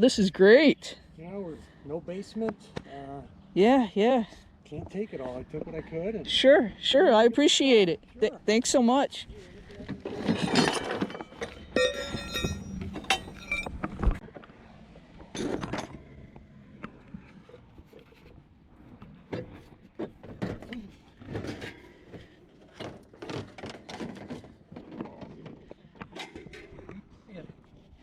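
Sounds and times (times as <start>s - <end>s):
hard objects knocking and clinking: 10.2s - 13.9s.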